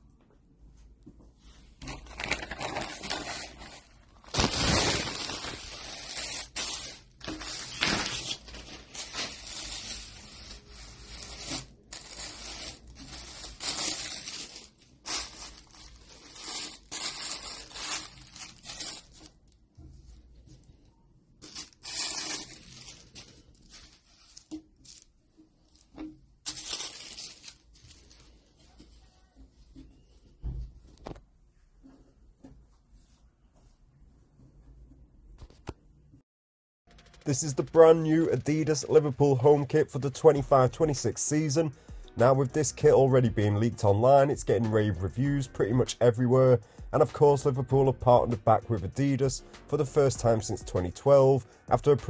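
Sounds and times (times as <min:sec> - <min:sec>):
packaging tearing and crinkling: 0:02.0 - 0:19.3, 0:21.4 - 0:25.0, 0:26.5 - 0:28.2.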